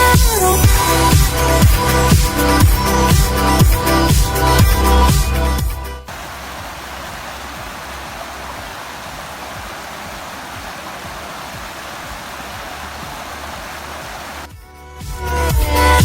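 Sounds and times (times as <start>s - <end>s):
fast-flowing stream: 6.1s - 14.5s.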